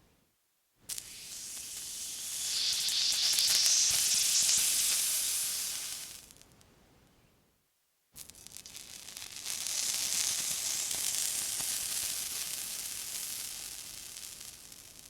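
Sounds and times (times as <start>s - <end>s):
water sizzling: 0.9s - 6.3s.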